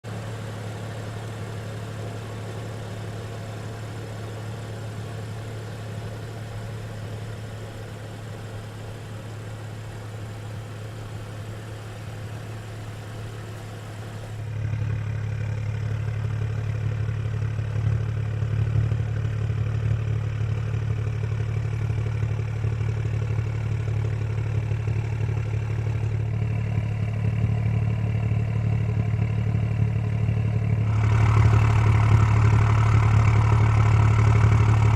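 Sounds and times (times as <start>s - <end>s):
car engine idling: 0.0s - 34.9s.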